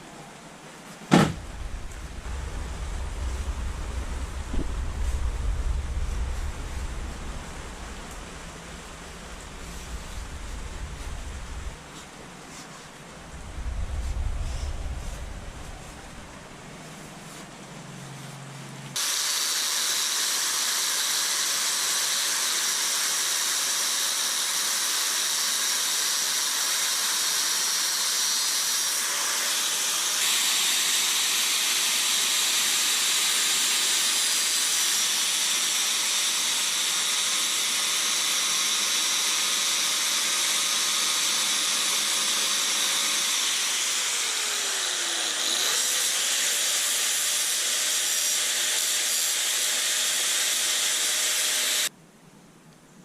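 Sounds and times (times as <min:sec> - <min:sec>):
faint motor whine: 0:00.0 - 0:53.0
power tool hissing: 0:01.1 - 0:12.4, 0:19.0 - 0:51.9.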